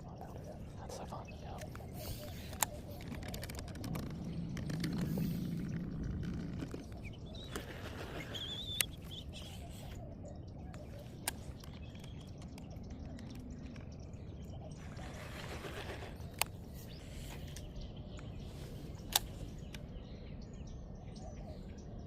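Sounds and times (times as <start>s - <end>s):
sharp clicks: 1.2s - 9.3s, 10.7s - 14.3s, 15.5s - 16.6s, 18.9s - 19.9s
bird wavering call: 7.0s - 11.2s.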